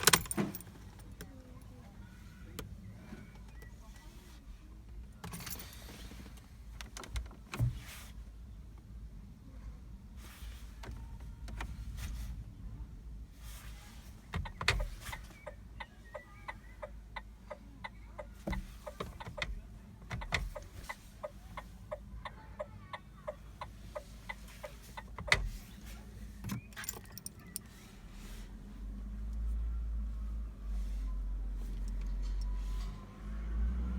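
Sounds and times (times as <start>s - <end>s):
keys jangling: 0.0s - 0.7s, 26.7s - 27.6s.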